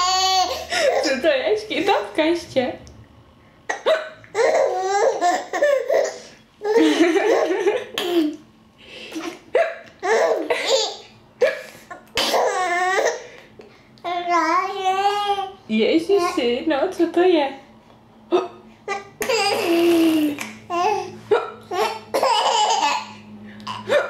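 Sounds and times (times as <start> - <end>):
baby laughing: 0.0 - 1.2, 3.7 - 8.4, 9.2 - 11.1, 11.9 - 13.3, 18.4 - 24.0.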